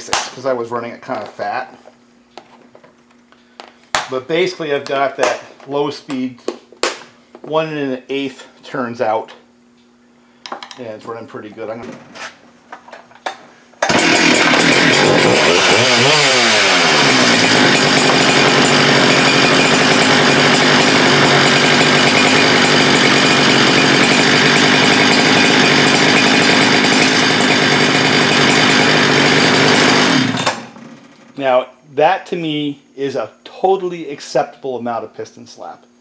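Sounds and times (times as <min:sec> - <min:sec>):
chainsaw running at high revs: 0:13.8 - 0:31.3.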